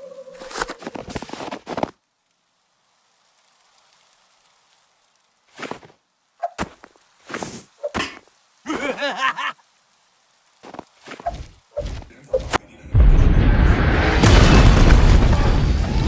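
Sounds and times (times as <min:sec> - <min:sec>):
radio static hiss: 0:00.0 - 0:02.0, 0:10.6 - 0:12.8.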